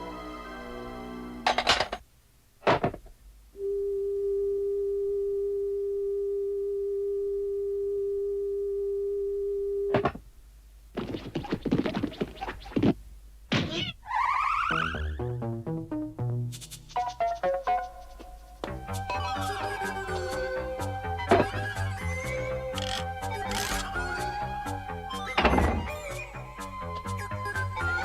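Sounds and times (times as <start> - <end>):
electronic crackling with chirps: 22.0 - 24.0.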